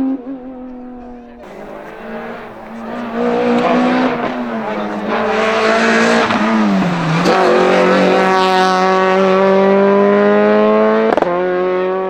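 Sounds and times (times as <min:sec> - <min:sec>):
race car engine revving high: 0:01.4 - 0:10.5.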